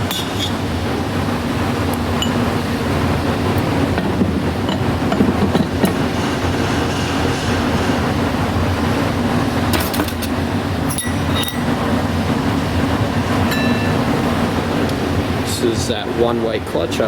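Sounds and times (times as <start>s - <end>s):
low machine hum and rumble: 0.0s - 17.0s
metallic clinks of parts: 10.9s - 11.8s.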